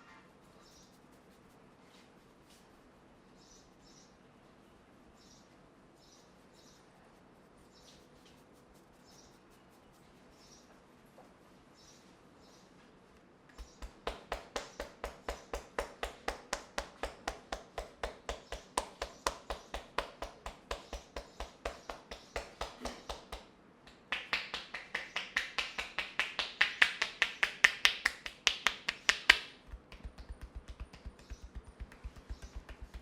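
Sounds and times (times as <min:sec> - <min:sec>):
sharp evenly spaced clicks: 0:13.6 - 0:33.0
bright fast clicks: 0:26.8 - 0:33.0.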